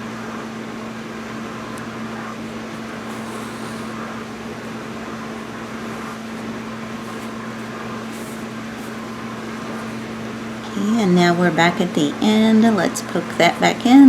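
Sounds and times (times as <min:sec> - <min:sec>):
low electrical hum: 0:00.0 - 0:14.0
background hiss: 0:01.3 - 0:11.4.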